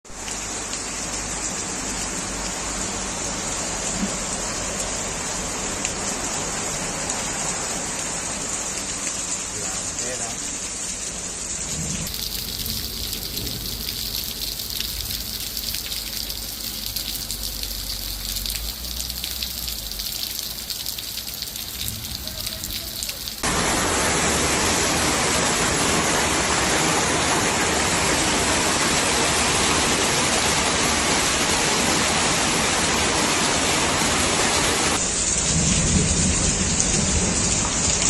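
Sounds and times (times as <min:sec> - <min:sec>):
hail and rain pattering: 0:05.8 - 0:23.6, 0:34.9 - 0:38.0.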